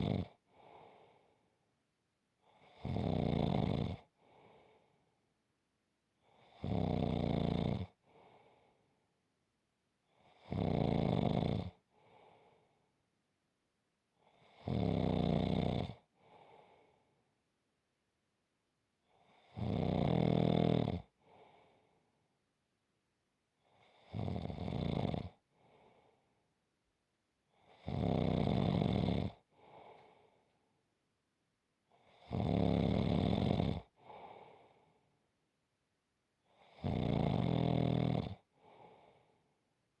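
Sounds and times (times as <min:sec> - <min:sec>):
deep rhythmic snoring: 0:00.0 - 0:01.3, 0:02.4 - 0:05.0, 0:06.2 - 0:08.8, 0:10.1 - 0:12.7, 0:14.2 - 0:16.9, 0:19.1 - 0:21.9, 0:23.6 - 0:26.1, 0:27.5 - 0:30.4, 0:31.9 - 0:34.9, 0:36.4 - 0:39.4
soft breath: 0:00.5 - 0:01.6, 0:04.2 - 0:05.2, 0:08.0 - 0:09.0, 0:11.9 - 0:12.9, 0:16.2 - 0:17.2, 0:21.2 - 0:22.2, 0:25.5 - 0:26.4, 0:29.4 - 0:30.7, 0:34.0 - 0:35.2, 0:38.5 - 0:39.6.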